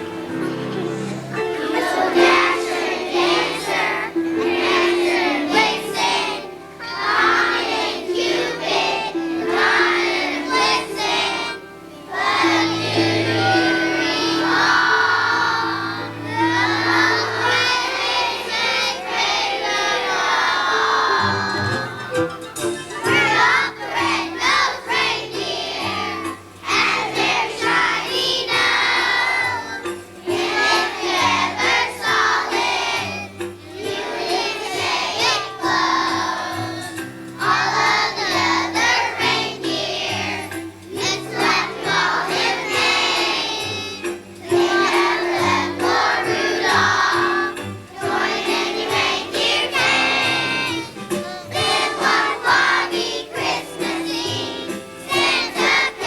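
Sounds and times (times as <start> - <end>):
children singing: 0.0 - 56.0
instrumental accompaniment: 0.0 - 56.0.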